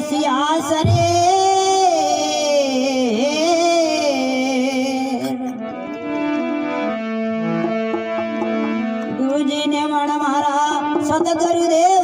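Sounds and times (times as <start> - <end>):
instrument holding notes: 4.2 - 10.3.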